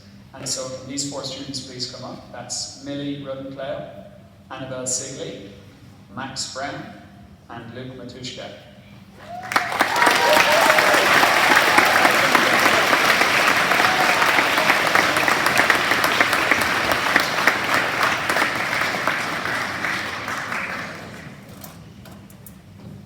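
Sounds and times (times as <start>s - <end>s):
audience applauding: 9.2s - 21.7s.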